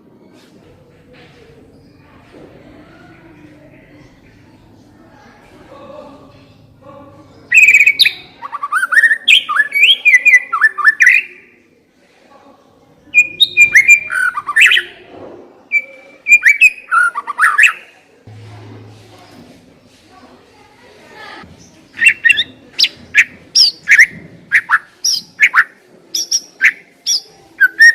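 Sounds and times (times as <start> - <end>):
bird singing whistled phrases: 7.5 - 11.3, 13.2 - 14.9, 15.7 - 17.8, 22.0 - 27.9.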